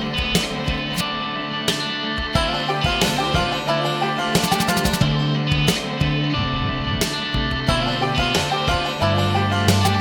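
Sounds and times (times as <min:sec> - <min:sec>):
country tune on plucked strings: 0:00.0 - 0:10.0.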